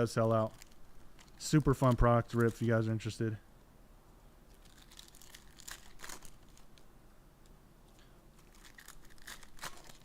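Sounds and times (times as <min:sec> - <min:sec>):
card pack wrappers crinkling: 0:00.1 - 0:02.8, 0:04.5 - 0:06.8, 0:08.3 - 0:10.0.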